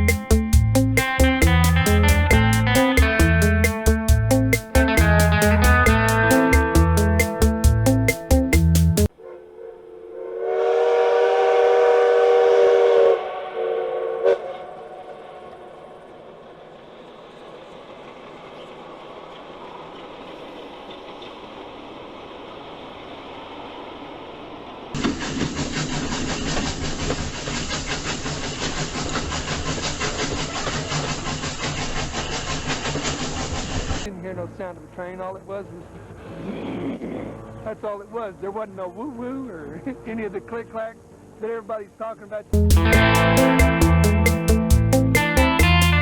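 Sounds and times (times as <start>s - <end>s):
train whistle blowing a chord: 9.1s - 15.5s
train rumble: 14.4s - 34.1s.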